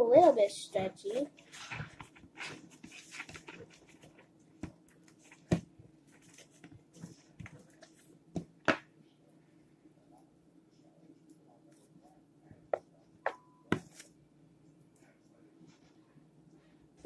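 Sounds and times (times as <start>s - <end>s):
slime squishing: 0.8s - 8.0s.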